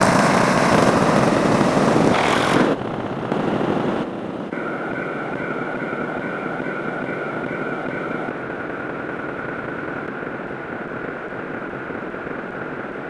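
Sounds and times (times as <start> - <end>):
loud rushing noise: 0.0 - 8.3.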